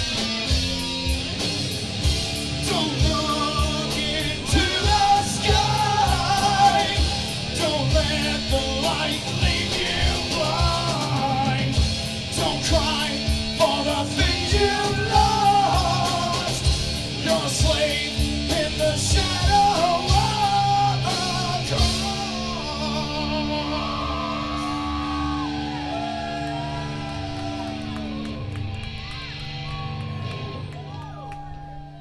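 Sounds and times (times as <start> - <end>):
held guitar chords: 0.0 - 31.0
drums: 0.0 - 32.0
person singing: 2.6 - 25.7.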